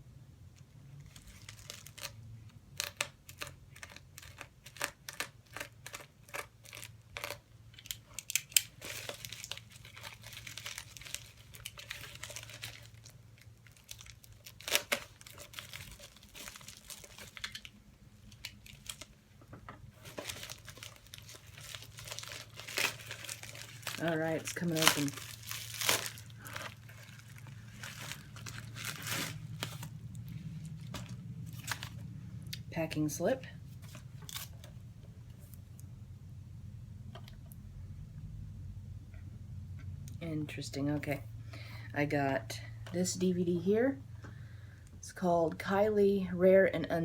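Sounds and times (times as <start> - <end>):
packaging crinkling and tearing: 1.0 - 19.2, 19.9 - 32.0, 33.7 - 34.8
package being cut open: 20.0 - 27.2.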